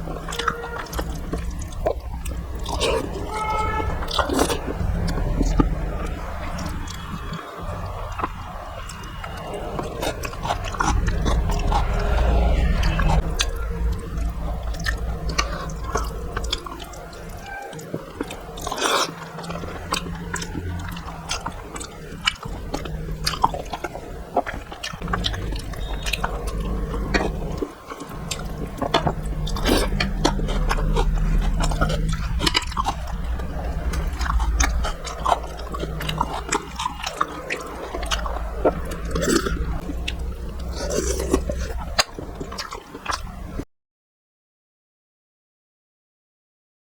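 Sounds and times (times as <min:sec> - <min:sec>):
low rumble: 0:00.0 - 0:17.4, 0:19.4 - 0:42.7
chewing and lip-smacking: 0:00.0 - 0:43.6.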